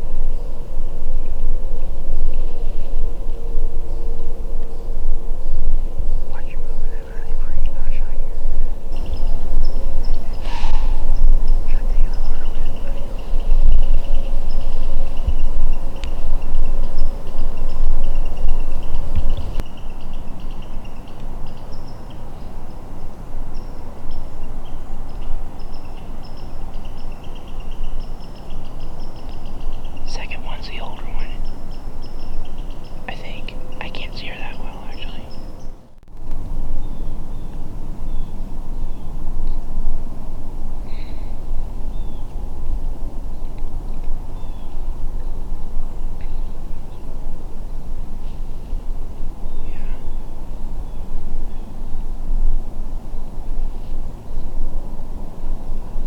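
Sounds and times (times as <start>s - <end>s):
insects chirping in trills: 0.0s - 35.8s
low rumbling noise: 0.0s - 56.0s
low rushing noise: 0.0s - 56.0s.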